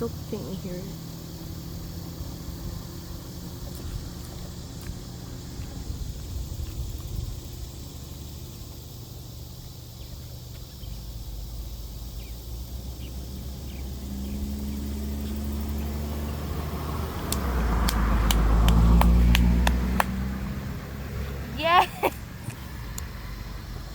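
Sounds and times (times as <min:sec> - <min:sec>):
steady low hum: 0:00.0 - 0:23.9
vehicle passing: 0:10.9 - 0:23.9.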